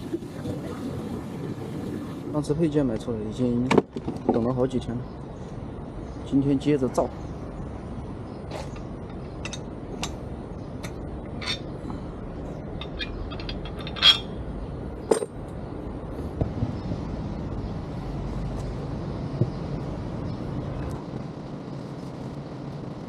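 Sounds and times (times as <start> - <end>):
low background noise: 0.0 - 23.0
metal tools clinking: 10.8 - 11.8, 12.7 - 14.4.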